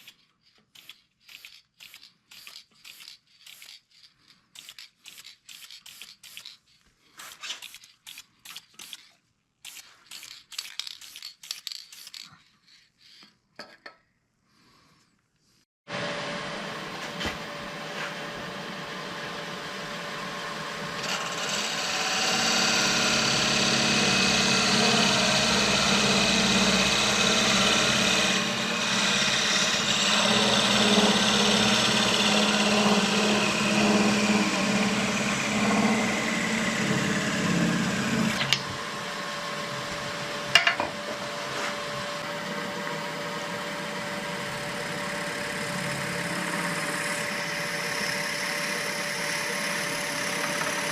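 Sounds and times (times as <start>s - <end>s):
wood lathe motor hum: 15.9s - 50.9s
tool rasping on spinning wood: 21.0s - 38.4s.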